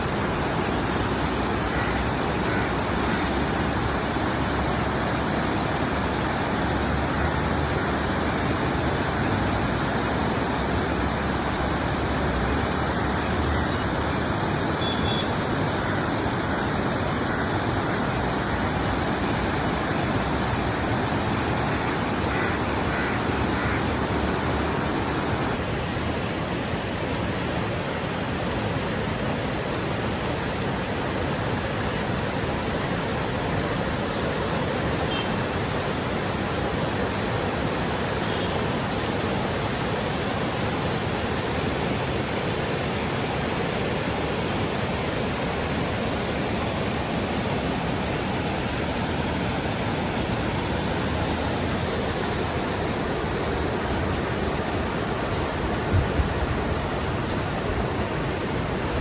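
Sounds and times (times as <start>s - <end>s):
river water rushing: 0.0s - 59.0s.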